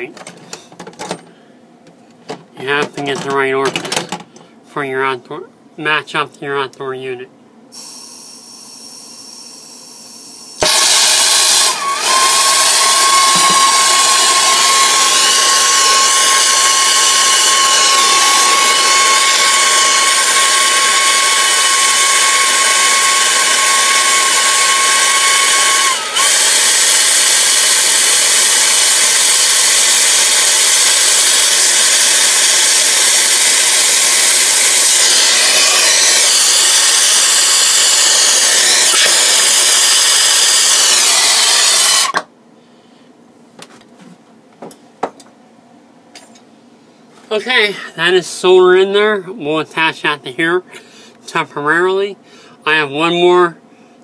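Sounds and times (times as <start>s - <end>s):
thin steady whistle: 7.8s - 11.2s.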